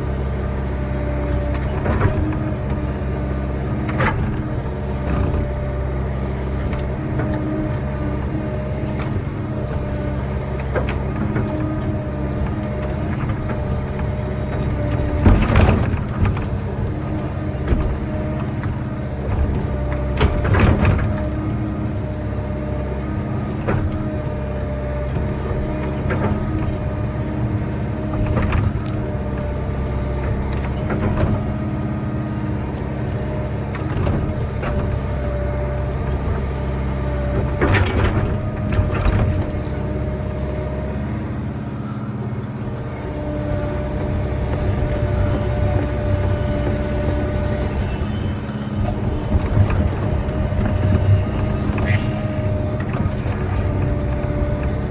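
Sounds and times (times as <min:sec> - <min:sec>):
diesel engine running: 0:00.0 - 0:54.9
metallic clanks and squeaks: 0:00.1 - 0:31.6, 0:32.5 - 0:54.8.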